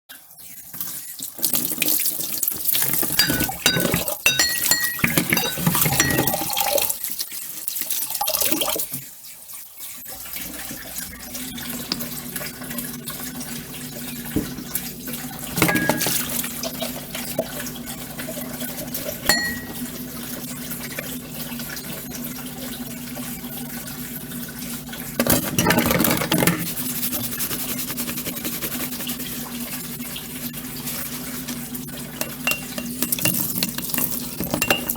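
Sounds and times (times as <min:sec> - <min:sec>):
tap running: 0:02.8 - 0:06.8, 0:14.3 - 0:14.9, 0:15.5 - 0:16.5, 0:19.0 - 0:19.9, 0:32.2 - 0:34.9
dishes clattering and clinking: 0:02.8 - 0:06.9, 0:15.5 - 0:17.6, 0:18.8 - 0:20.0, 0:25.2 - 0:26.8, 0:32.1 - 0:34.9.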